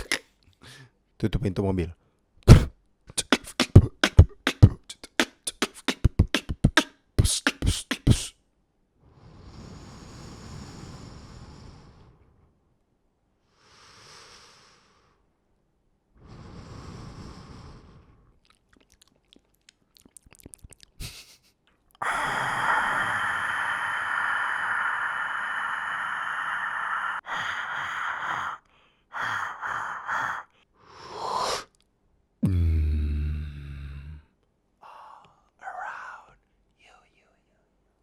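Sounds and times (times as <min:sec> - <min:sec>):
man making hissing mouth sounds: 0:00.0 - 0:00.2, 0:02.5 - 0:08.4, 0:22.0 - 0:28.6, 0:29.2 - 0:31.8, 0:32.4 - 0:34.3
quick mouth clicks: 0:00.0 - 0:00.2, 0:02.5 - 0:08.3, 0:18.5 - 0:21.1.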